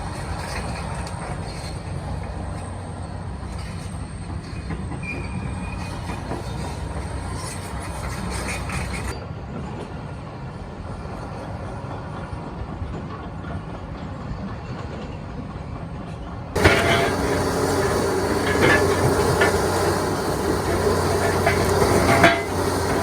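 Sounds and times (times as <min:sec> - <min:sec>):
diesel engine rumble: 0:16.6 - 0:23.0
machine crushing debris: 0:16.6 - 0:23.0.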